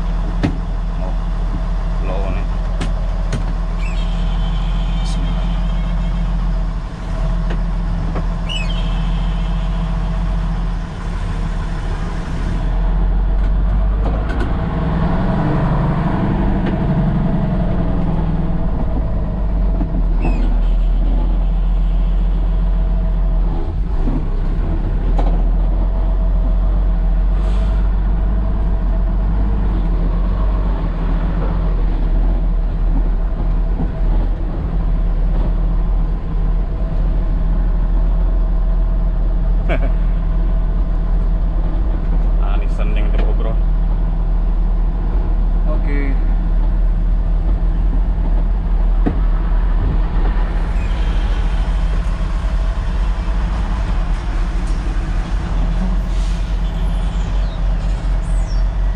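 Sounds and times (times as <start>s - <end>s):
diesel truck engine running: 0.0s - 58.9s
high squeaks: 3.8s - 6.4s, 8.4s - 10.2s.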